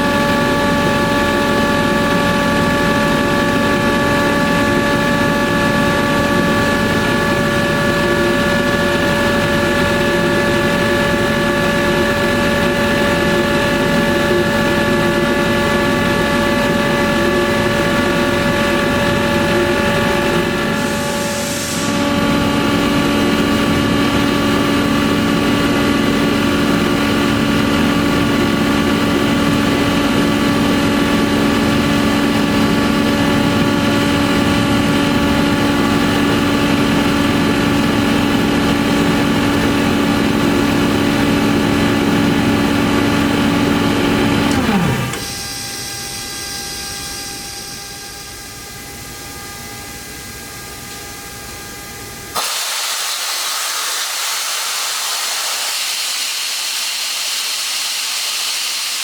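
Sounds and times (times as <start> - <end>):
air compressor humming: 0.0 - 49.1, 52.3 - 59.0
hiss of released air: 20.7 - 22.1, 52.4 - 59.0.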